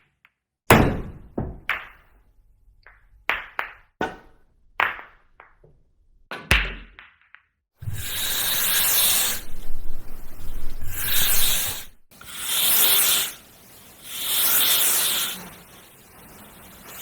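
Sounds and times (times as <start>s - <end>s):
hissing scrape strokes: 7.8s - 17.0s.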